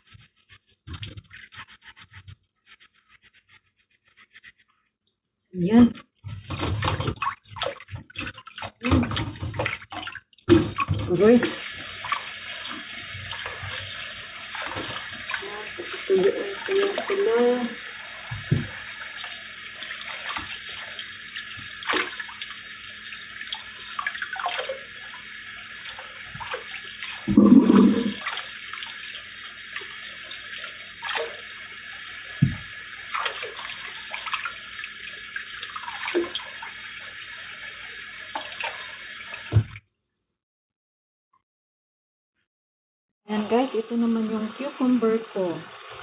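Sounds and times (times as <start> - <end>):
knocks and clatters: 0.8 - 2.5, 6.2 - 7.3
tap water running into sink: 6.0 - 39.8, 44.2 - 46.0.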